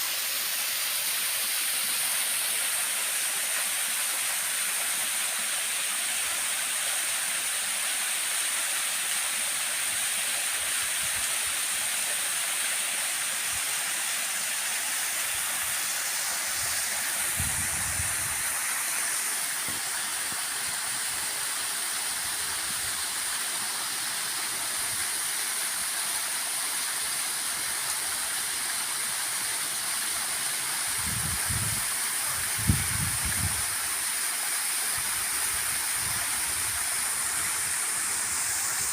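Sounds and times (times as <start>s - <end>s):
waterfall roaring: 35.0s - 38.9s.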